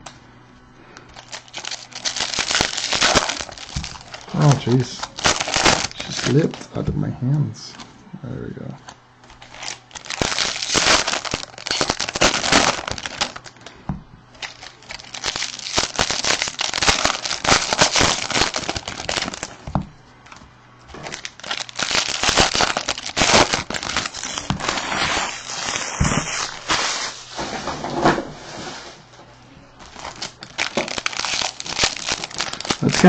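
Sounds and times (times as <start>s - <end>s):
wrappers crinkling and tearing: 1.0s - 6.8s, 9.2s - 13.7s, 14.3s - 19.7s, 20.9s - 27.4s, 29.8s - 33.0s.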